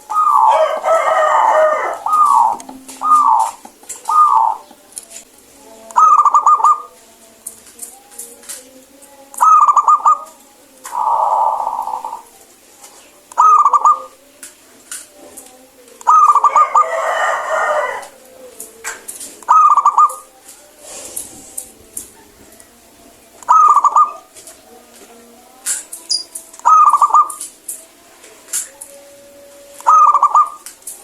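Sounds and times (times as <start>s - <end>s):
rough dove call: 0.0s - 4.7s, 9.4s - 12.3s, 13.4s - 14.2s, 23.4s - 24.3s, 29.8s - 30.7s
dove staccato cooing: 0.0s - 4.9s, 5.9s - 7.0s, 9.4s - 12.4s, 13.2s - 14.3s, 16.0s - 20.4s, 23.4s - 25.3s, 26.6s - 27.6s, 29.7s - 31.0s.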